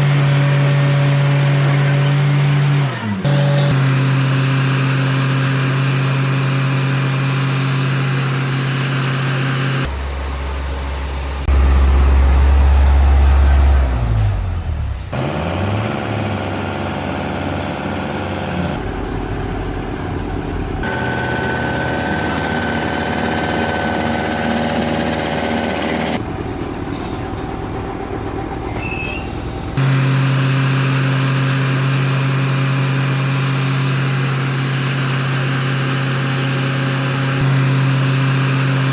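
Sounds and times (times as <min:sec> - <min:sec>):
engine revving: 0:00.0 - 0:10.0, 0:15.1 - 0:26.2, 0:29.5 - 0:38.9
heavy machinery engines running: 0:00.0 - 0:38.9.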